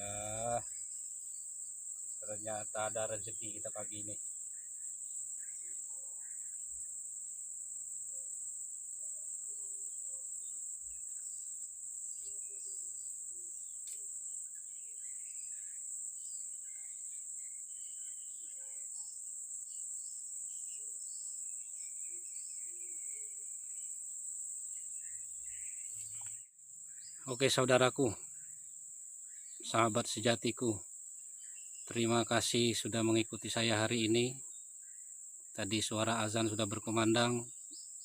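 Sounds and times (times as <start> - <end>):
insect chorus droning: 0.0 - 38.0
bird chirps: 12.1 - 19.8, 24.8 - 30.4.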